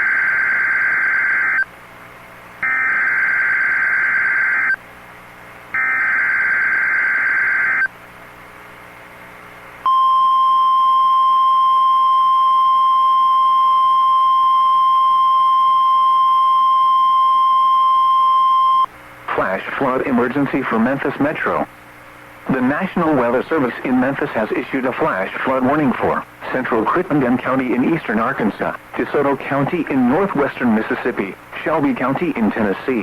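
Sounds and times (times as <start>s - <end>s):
steady warning tone: 0.0s - 1.7s, 2.6s - 4.8s, 5.8s - 8.0s
harsh buzzing data screech: 2.6s - 4.8s, 5.8s - 7.9s.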